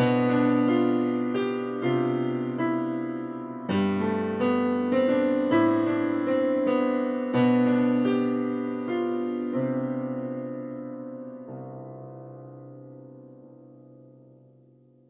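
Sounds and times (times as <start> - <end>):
gentle piano music: 0.0 - 15.0.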